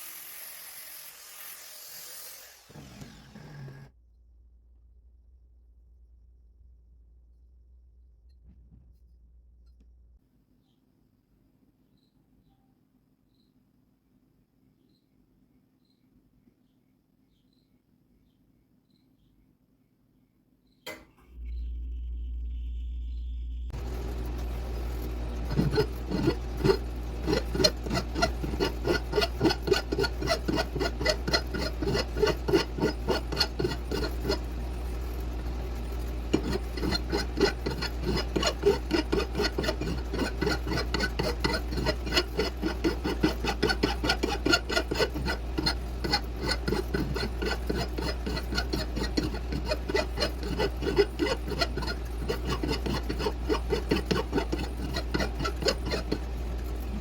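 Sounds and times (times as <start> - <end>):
rasp scraping wood: 25.0 - 57.0.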